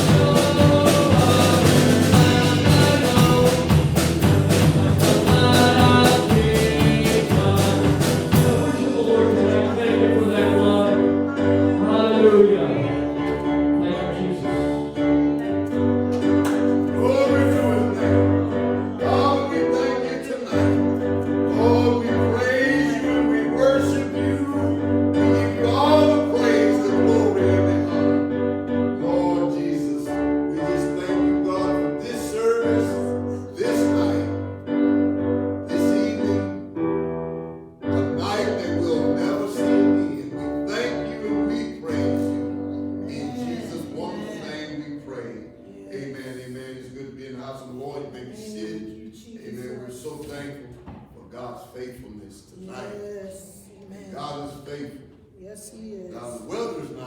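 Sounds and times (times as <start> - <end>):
drum beat: 0.0 - 9.6
church worship music: 0.0 - 57.0.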